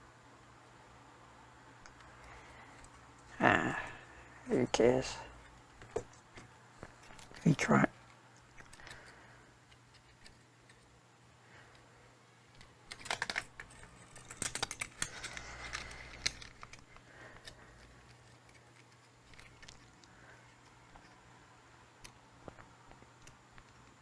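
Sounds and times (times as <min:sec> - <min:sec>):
game controller clicking: 0:12.6 - 0:20.1.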